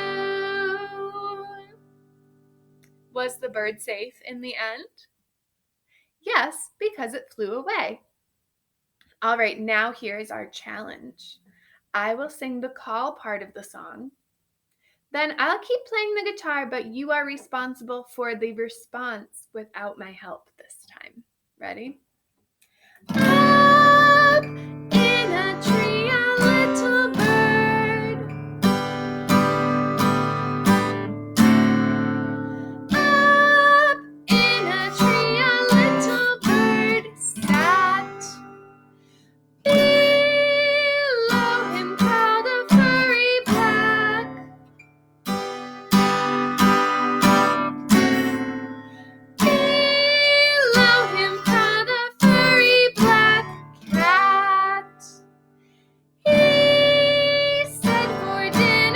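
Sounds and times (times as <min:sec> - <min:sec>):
person singing children's song: 0:00.0 - 0:01.8, 0:23.1 - 0:28.4, 0:32.9 - 0:38.5, 0:39.7 - 0:44.6, 0:49.4 - 0:55.2, 0:56.3 - 0:58.9
acoustic guitar: 0:00.0 - 0:04.0, 0:23.0 - 0:58.9.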